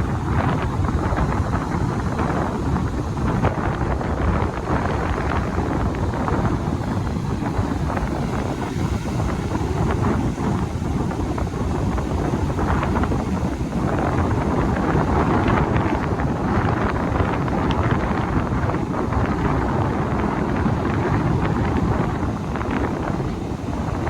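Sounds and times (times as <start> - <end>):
wind buffeting microphone: 0.0 - 24.0.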